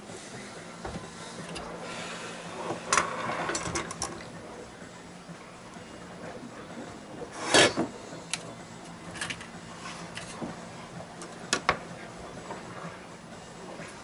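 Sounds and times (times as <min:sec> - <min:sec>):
rasping scrape: 0:07.3 - 0:07.9.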